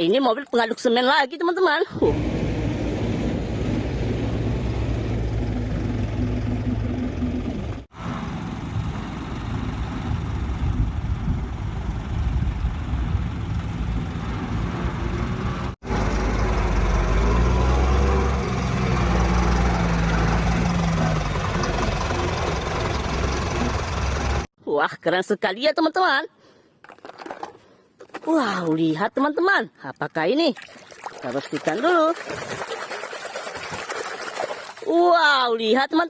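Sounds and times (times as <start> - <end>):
heavy truck engine running: 2.1 - 24.5.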